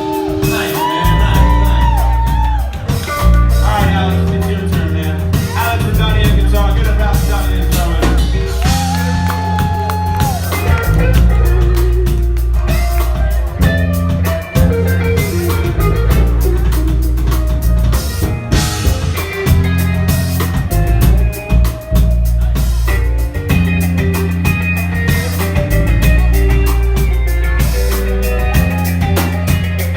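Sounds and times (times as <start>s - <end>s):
live rock band playing: 0.0s - 29.9s
bending guitar lead note: 10.2s - 29.9s.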